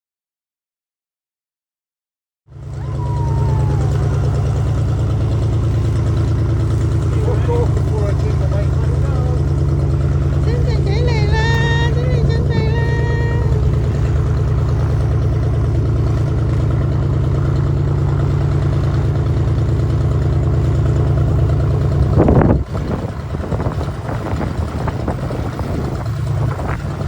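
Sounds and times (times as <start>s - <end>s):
airplane engine drone: 2.5s - 27.0s.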